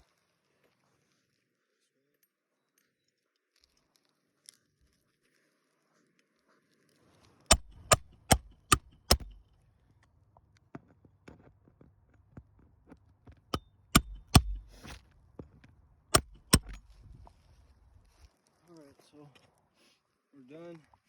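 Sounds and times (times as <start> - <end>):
hammer striking nails: 7.5 - 9.4, 13.6 - 15.0, 16.2 - 16.9
handling clicks: 7.5 - 9.4, 16.2 - 16.9.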